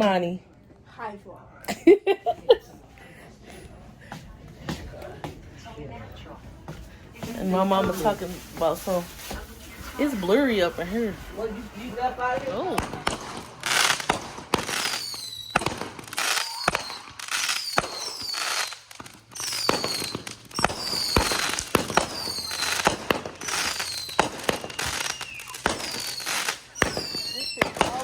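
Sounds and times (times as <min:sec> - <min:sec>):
fireworks cracking: 0:07.2 - 0:28.0
firework whistle falling in pitch: 0:16.2 - 0:18.6, 0:23.4 - 0:26.2.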